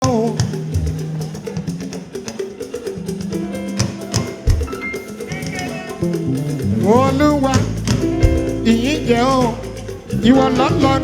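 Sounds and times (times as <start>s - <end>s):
sharp percussion clicks: 0.0s - 11.0s
church band music: 3.4s - 11.0s
sustained bass notes: 6.0s - 11.0s.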